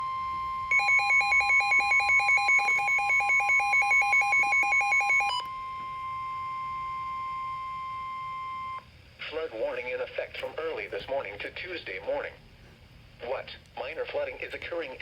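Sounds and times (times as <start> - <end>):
fast two-pitch beeping: 0.7 - 5.5
steady electronic alert tone: 0.7 - 5.5.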